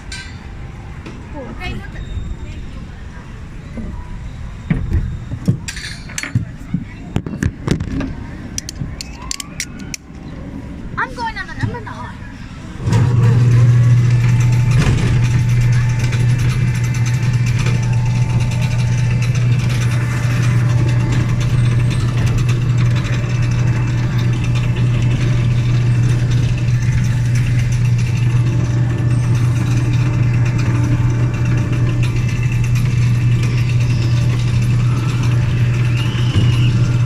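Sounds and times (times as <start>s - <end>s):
train running: 8.1s - 37.0s
mechanical rattling and clicking: 12.8s - 37.0s.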